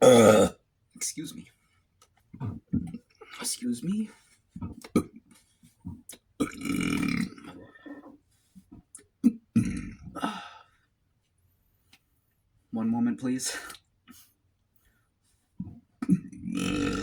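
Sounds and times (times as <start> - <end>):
man belching loudly: 0.0 - 0.6, 6.4 - 7.6, 9.3 - 10.2, 16.0 - 17.0.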